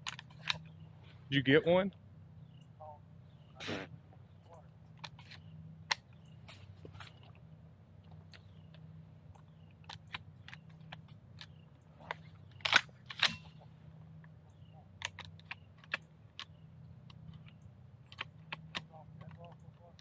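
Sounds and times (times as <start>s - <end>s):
low steady hum: 0.0s - 20.0s
sharp shotgun clacks: 11.4s - 13.6s
shotgun mechanism clicks: 12.6s - 13.6s, 15.0s - 19.6s.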